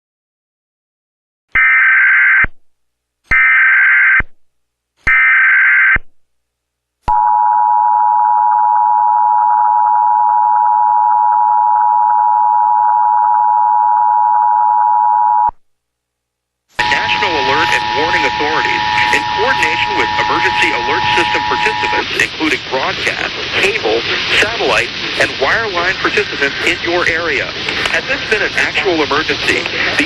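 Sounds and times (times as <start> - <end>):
two-tone attention signal: 16.8 - 22.1
rapid warbling high tones: 16.8 - 22.6
data header bursts: 16.8 - 30.0.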